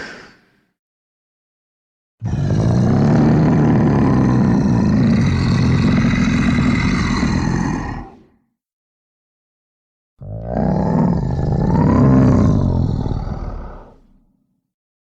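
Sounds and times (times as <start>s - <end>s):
dragon roar: 2.2s - 8.4s, 10.2s - 14.2s.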